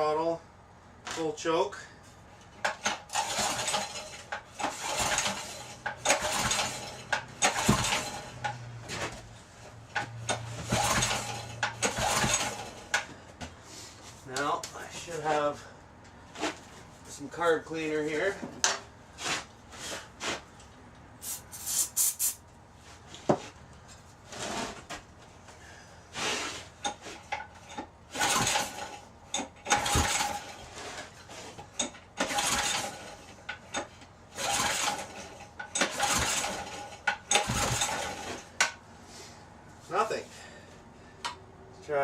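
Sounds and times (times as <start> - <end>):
small engine pull-start cranking: 2.6 - 8.7, 9.9 - 13.0, 26.2 - 38.7
short hisses: 21.2 - 22.4.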